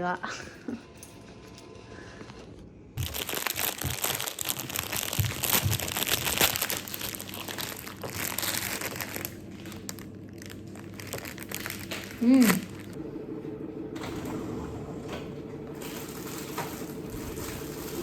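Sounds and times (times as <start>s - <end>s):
plastic wrapper crinkling: 3.0s - 13.0s.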